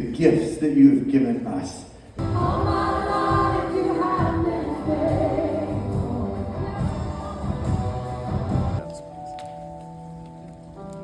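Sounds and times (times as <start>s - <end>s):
steady low beat: 2.2s - 8.8s
worship song singing: 2.2s - 8.8s.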